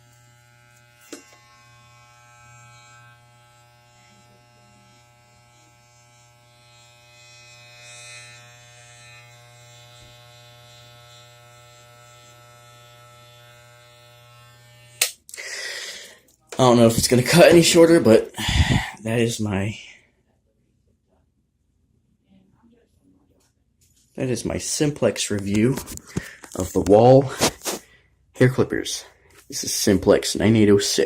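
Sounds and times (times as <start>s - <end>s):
electric hair clippers buzzing: 0.0s - 15.3s.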